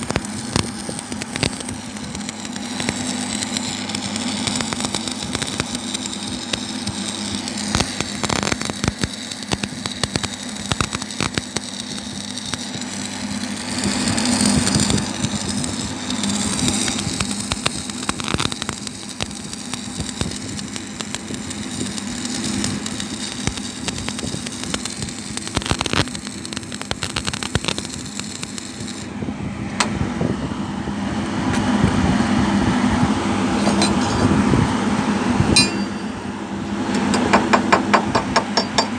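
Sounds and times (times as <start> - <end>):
welding arc crackling: 0.0 - 29.1
steady low hum: 29.0 - 38.9.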